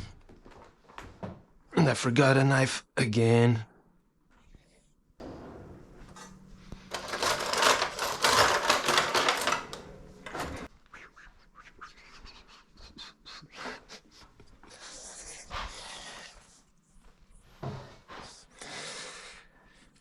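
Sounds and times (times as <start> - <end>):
plastic shrink-wrap tearing: 5.2 - 10.7.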